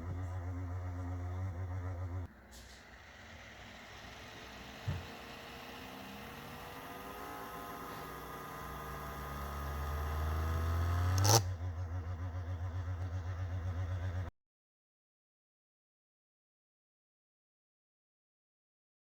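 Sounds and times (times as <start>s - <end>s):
laptop cooling fan running: 0.0s - 14.3s.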